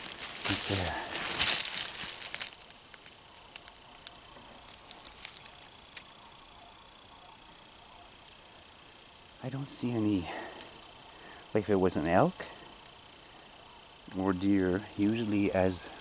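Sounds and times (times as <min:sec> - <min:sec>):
dry brush and leaves rustling: 0:00.0 - 0:09.4
light ticks and crackles: 0:00.0 - 0:16.0.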